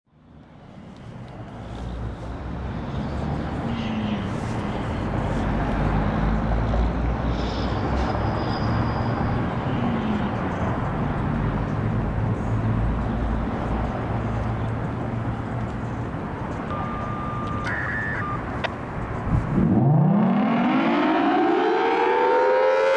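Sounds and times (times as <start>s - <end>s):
brief high tone: 16.7s - 18.6s.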